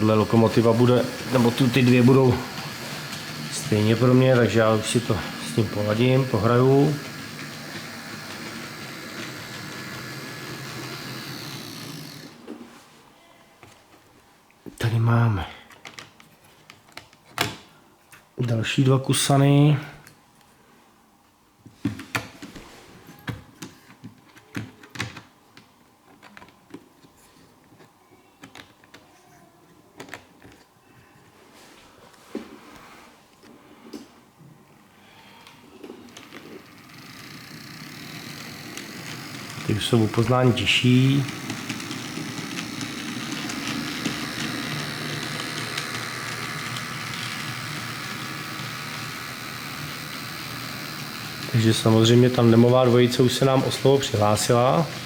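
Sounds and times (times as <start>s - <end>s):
model train motor hum: 0.0s - 12.6s, 35.4s - 55.0s.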